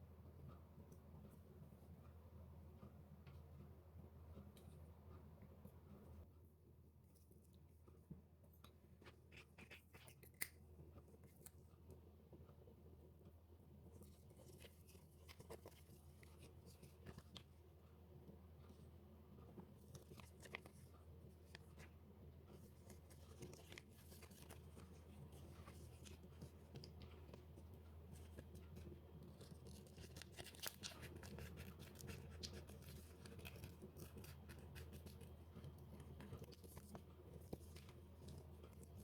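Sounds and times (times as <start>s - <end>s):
low steady hum: 0.0s - 39.0s
light scratching on paper: 8.9s - 11.6s, 18.2s - 39.0s.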